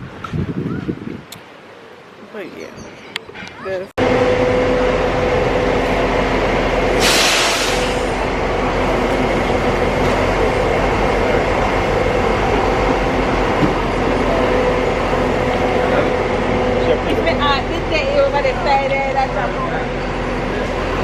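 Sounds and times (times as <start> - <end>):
vehicle engine hum: 4.0 - 21.0
short hiss: 7.0 - 8.2.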